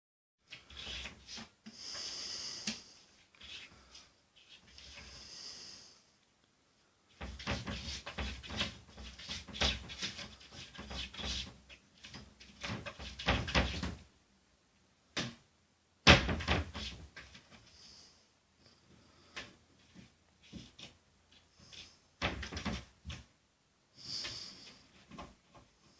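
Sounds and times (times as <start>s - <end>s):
cupboard door rattling: 12.4s - 14.0s, 16.1s - 17.0s, 22.2s - 22.9s
door banging against frame: 16.0s - 17.0s.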